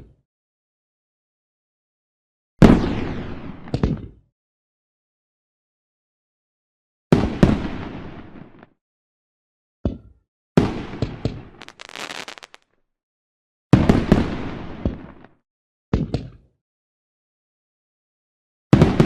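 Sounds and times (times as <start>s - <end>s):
firework bangs rumbling: 11.6s - 12.6s
firework crackling: 11.6s - 12.6s.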